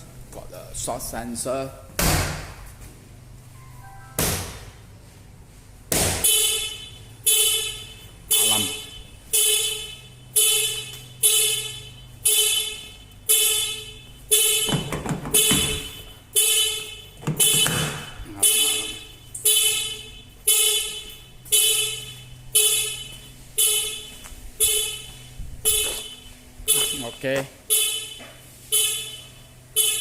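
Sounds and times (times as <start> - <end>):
car alarm siren pulsing: 6.2 - 30.0.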